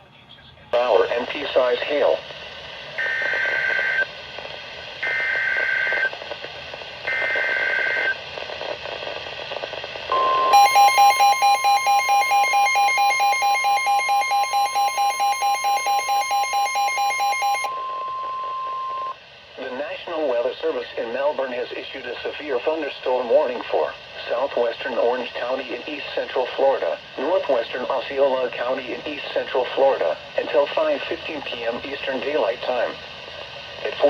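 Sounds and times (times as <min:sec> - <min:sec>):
harsh pulsing beep: 0:10.1 - 0:19.2
steady warning alarm tone: 0:10.1 - 0:19.2.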